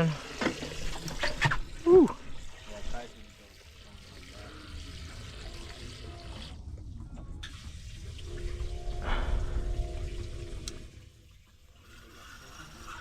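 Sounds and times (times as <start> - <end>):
water sloshing and running: 0.0 - 13.0
low rumble: 6.6 - 11.2
steady hum: 7.0 - 11.2.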